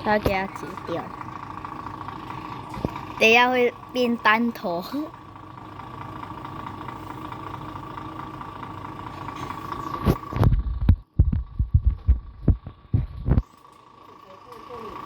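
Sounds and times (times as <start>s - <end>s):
diesel engine idling with whine: 0.0s - 15.0s
loud low thumps and rumbles: 2.6s - 3.4s, 10.0s - 13.4s.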